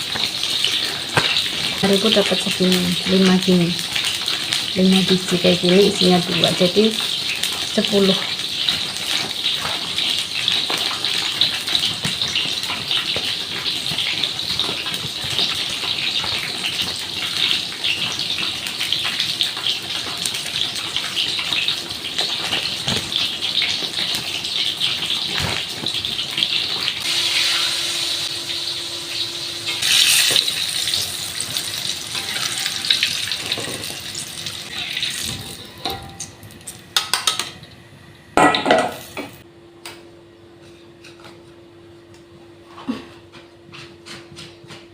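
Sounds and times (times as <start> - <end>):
water running from a tap: 0.0 - 35.7.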